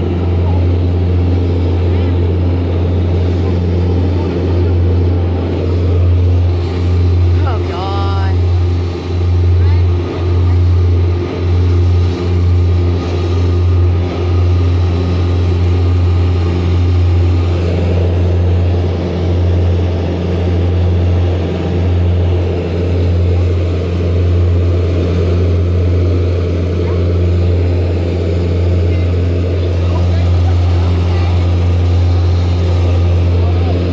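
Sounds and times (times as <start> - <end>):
aircraft engines droning in cabin: 0.0 - 33.9.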